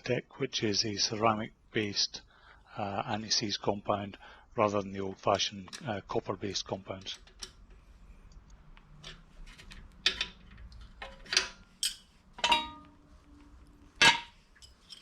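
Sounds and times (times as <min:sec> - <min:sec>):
metal parts clicking and knocking: 0:08.9 - 0:13.0, 0:14.0 - 0:15.0
ringing metallic clink: 0:11.8 - 0:13.0.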